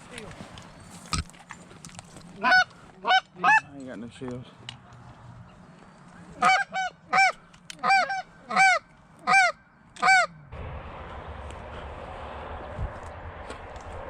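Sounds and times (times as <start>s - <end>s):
goose honking: 2.4s - 3.7s, 6.4s - 10.4s
steady rushing noise: 10.5s - 14.0s.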